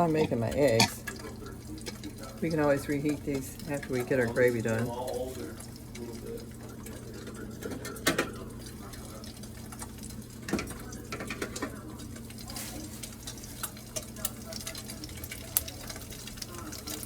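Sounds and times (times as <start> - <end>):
utensil knocking against pan: 0.0 - 1.1
eggs sizzling in a pan: 0.0 - 17.0.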